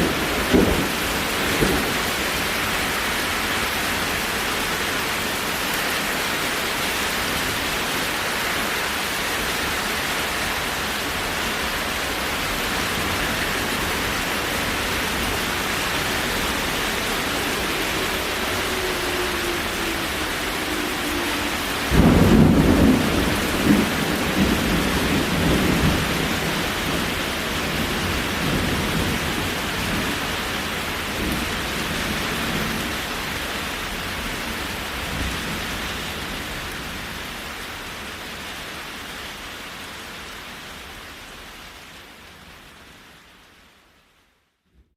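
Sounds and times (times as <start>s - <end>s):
thunderclap rumbling: 0.0s - 3.5s, 11.8s - 33.4s
steady rain: 0.0s - 44.9s
faint siren: 13.2s - 24.4s.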